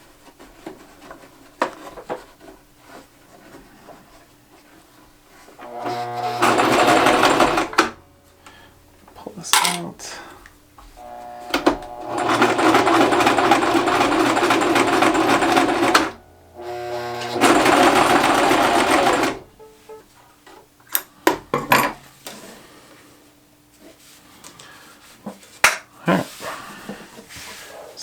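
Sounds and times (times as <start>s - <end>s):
sewing machine stitching: 5.6s - 8.5s, 11.0s - 19.6s.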